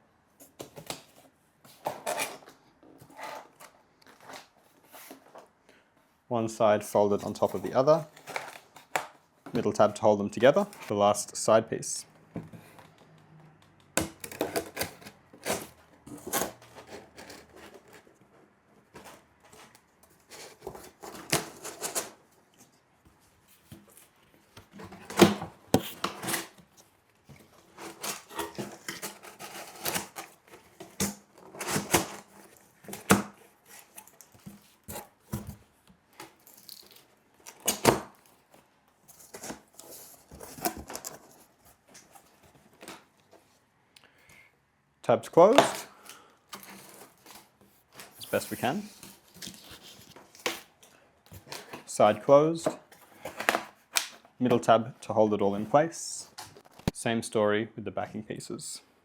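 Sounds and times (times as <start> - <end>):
cardboard crinkling and creasing snaps: 7.3 - 10.9, 23.5 - 43.4, 45.4 - 51.9, 52.6 - 54.3
cardboard being folded: 46.6 - 51.7.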